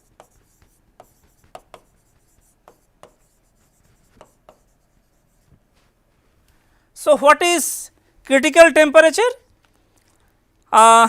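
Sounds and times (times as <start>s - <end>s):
pen scratching on paper: 0.0s - 5.8s.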